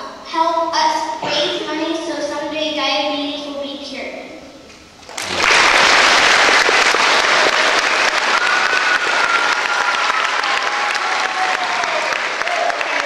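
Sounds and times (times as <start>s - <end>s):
children applauding: 5.0s - 13.0s.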